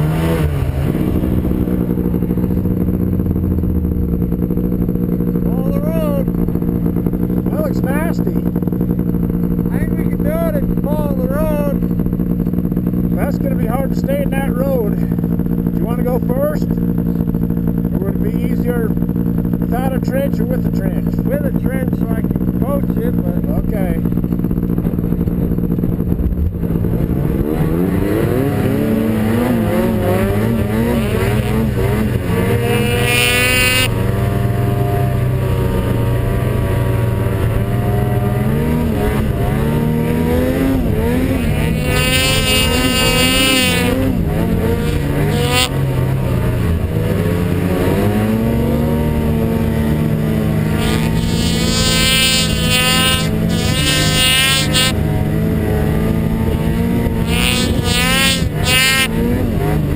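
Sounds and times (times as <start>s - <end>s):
snowmobile engine revving: 0.0s - 59.9s.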